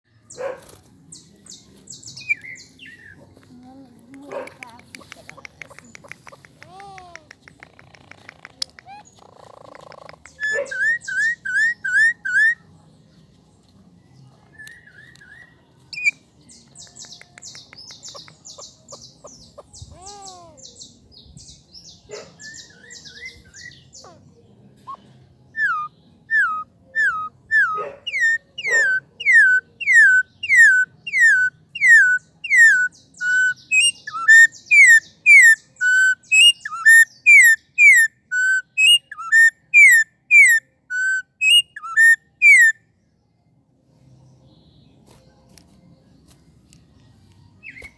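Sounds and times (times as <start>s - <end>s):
bird chattering: 4.2s - 12.6s, 17.0s - 20.7s, 25.6s - 42.8s
pet bird whistling: 8.8s - 12.6s, 25.6s - 42.8s.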